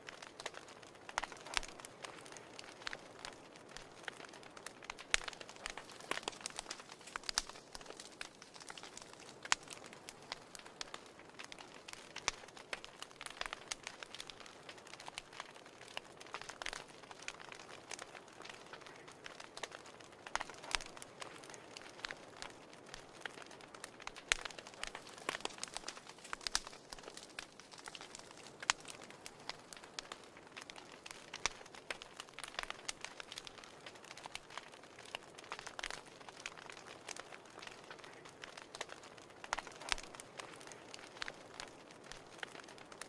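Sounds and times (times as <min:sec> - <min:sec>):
soft hiss of flames: 0:00.0 - 0:43.0
wood fire crackling and popping: 0:00.0 - 0:43.0.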